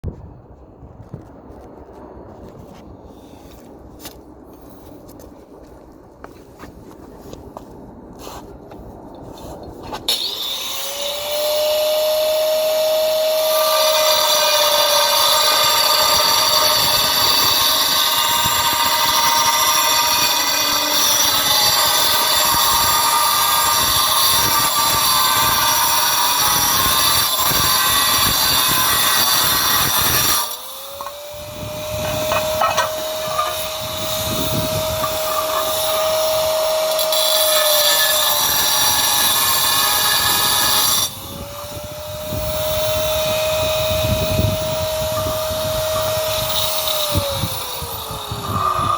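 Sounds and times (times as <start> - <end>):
power tool whining and grinding: 9.9 - 48.9.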